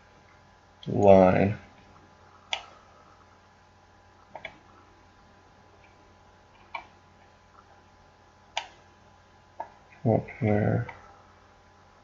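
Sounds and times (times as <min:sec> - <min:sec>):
computer mouse clicks: 0:02.4 - 0:02.8, 0:04.3 - 0:04.6, 0:06.6 - 0:07.0, 0:08.5 - 0:08.8.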